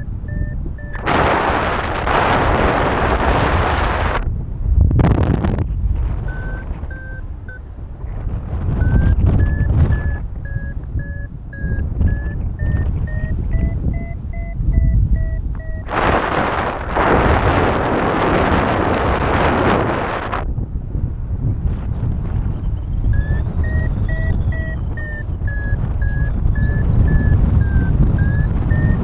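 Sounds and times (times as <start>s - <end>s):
variometer short beeps: 0.0s - 1.6s, 6.2s - 7.6s, 8.8s - 16.0s, 23.0s - 29.0s
wind buffeting microphone: 0.0s - 29.0s.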